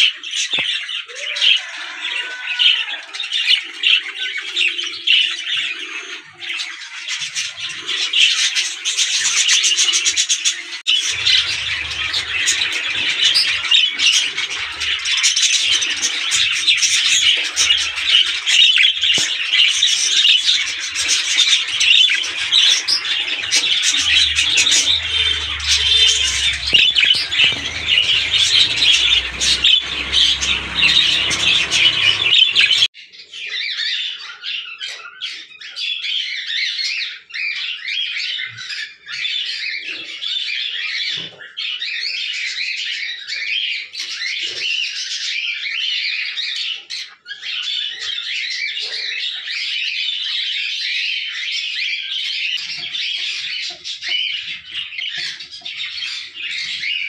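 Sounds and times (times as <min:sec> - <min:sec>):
budgerigars chattering: 0:03.3 - 0:32.9.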